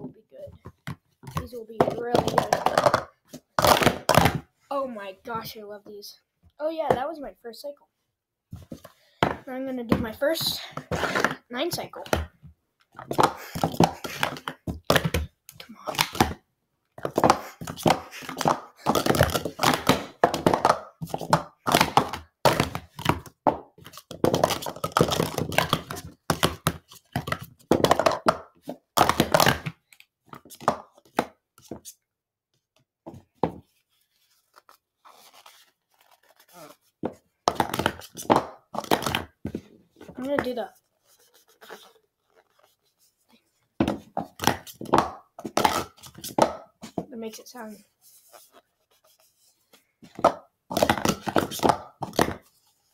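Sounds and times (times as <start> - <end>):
plastic cups clacking: 0.5 - 4.5, 8.6 - 16.4, 17.0 - 31.9, 34.5 - 42.8, 43.8 - 47.1, 50.0 - 52.6.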